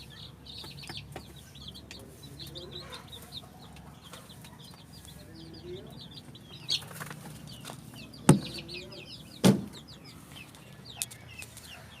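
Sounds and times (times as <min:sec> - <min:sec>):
chickens clucking and peeping: 0:00.0 - 0:12.0
sharp loud knocks: 0:08.3 - 0:08.6, 0:09.4 - 0:09.8.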